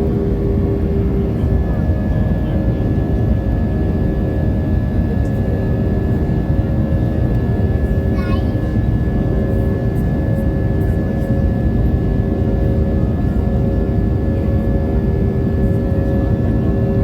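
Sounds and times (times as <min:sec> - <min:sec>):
airliner engine and airflow drone: 0:00.0 - 0:17.0.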